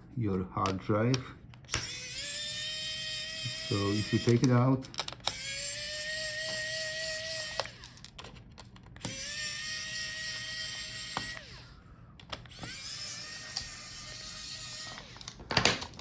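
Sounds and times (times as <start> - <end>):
electric screwdriver whine: 1.7 - 4.6, 5.2 - 8.0, 9.0 - 11.8, 12.5 - 15.4
screwdriver clicks: 4.1 - 5.5, 7.4 - 9.3, 10.7 - 11.5, 12.2 - 13.8.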